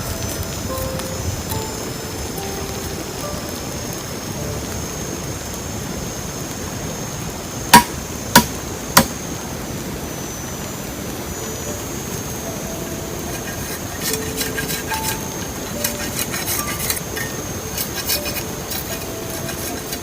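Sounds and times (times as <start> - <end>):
background hiss: 0.0 - 20.0
sharp knocks: 7.7 - 9.1.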